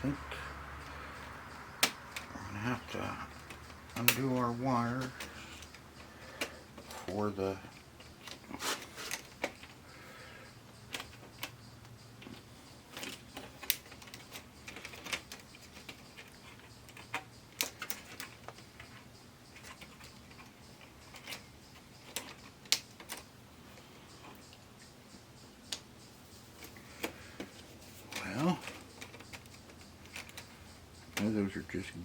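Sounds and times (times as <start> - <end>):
plastic parts clicking and tapping: 0.1 - 32.0.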